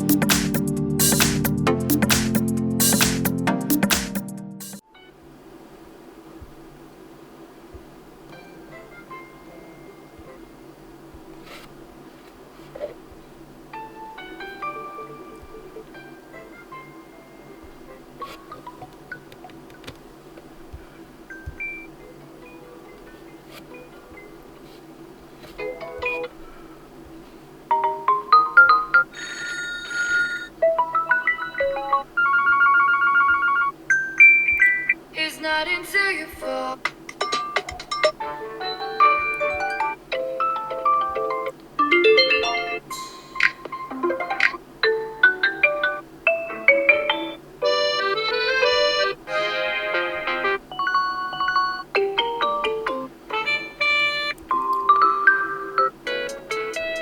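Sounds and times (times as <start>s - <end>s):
fast pulsing chord: 0.0s - 4.8s
melodic ringtone chimes: 27.8s - 35.0s, 50.8s - 52.8s, 54.6s - 57.0s.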